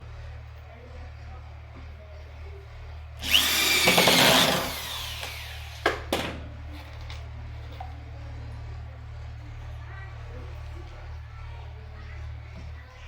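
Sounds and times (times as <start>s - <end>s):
power drill whine: 3.2s - 6.0s.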